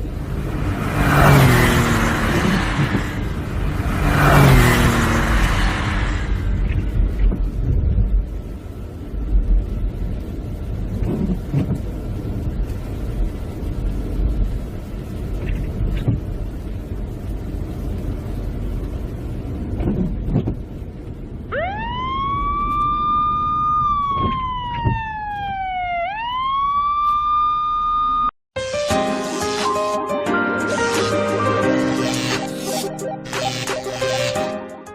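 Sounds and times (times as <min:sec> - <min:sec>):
road and rain noise in car: 0:00.0 - 0:27.2
emergency vehicle siren wailing: 0:21.5 - 0:28.3.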